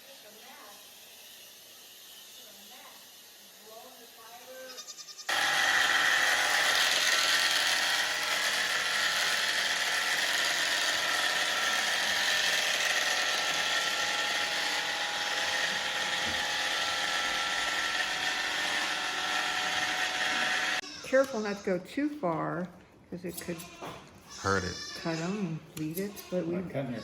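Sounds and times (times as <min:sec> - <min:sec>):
electric trimmer whining: 0:05.2 - 0:21.7.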